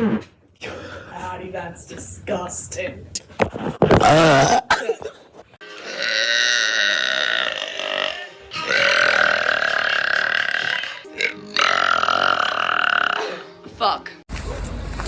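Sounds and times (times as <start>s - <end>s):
long drawn-out burps: 4.0s - 5.0s, 5.8s - 13.5s.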